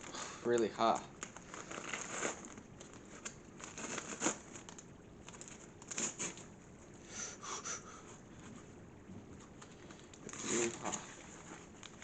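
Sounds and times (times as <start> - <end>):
paper bag crinkling: 0.0 - 6.5, 9.6 - 12.0.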